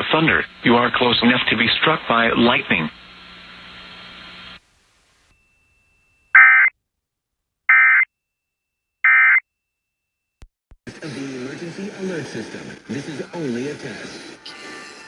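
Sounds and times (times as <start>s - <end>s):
faint broadcast hum: 0.0s - 6.3s.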